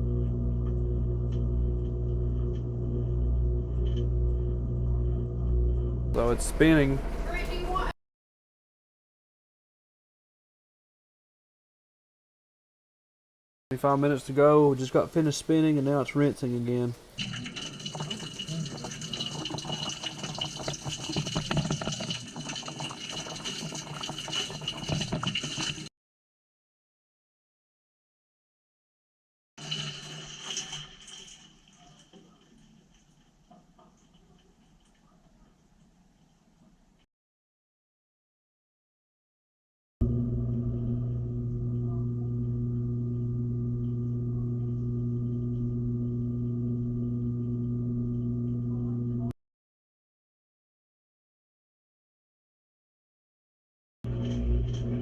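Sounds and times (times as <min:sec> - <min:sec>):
washing machine hum: 0:00.0 - 0:08.0, 0:13.9 - 0:25.9, 0:40.0 - 0:49.3, 0:54.1 - 0:55.0
water gushing into washing machine: 0:06.2 - 0:07.9, 0:17.0 - 0:25.9, 0:29.6 - 0:34.9.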